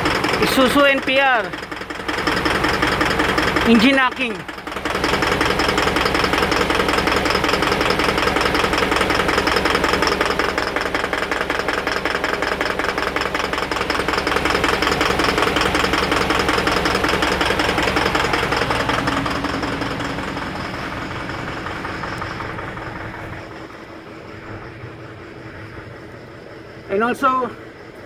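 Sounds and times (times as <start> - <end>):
truck engine knocking: 0.0 - 28.0.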